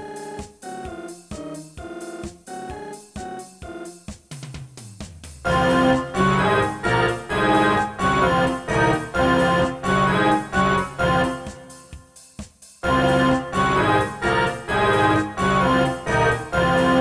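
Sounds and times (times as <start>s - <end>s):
synthesized organ chords: 5.4s - 12.0s, 12.8s - 17.0s.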